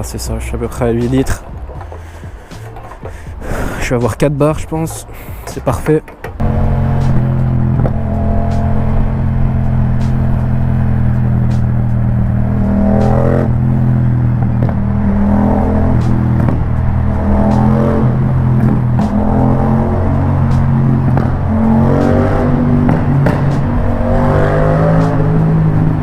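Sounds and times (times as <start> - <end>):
motorcycle engine revving: 6.4 - 26.0.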